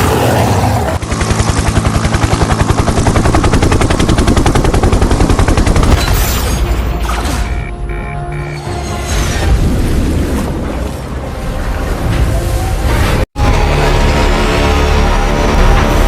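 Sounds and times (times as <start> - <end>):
rapid-fire rattling: 1.0 - 6.0.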